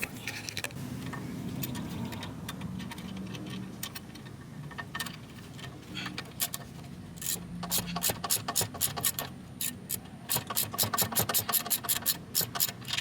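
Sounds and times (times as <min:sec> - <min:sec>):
ratchet wrench clicking: 0:06.3 - 0:13.0.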